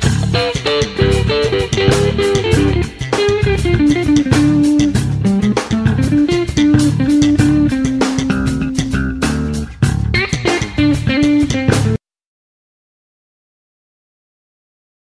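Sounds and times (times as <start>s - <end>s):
guitar instrumental with bass and drums: 0.0s - 12.0s.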